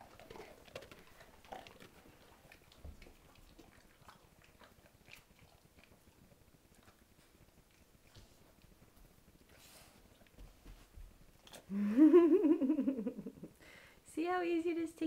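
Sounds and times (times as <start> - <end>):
dog chewing: 0.0 - 10.6.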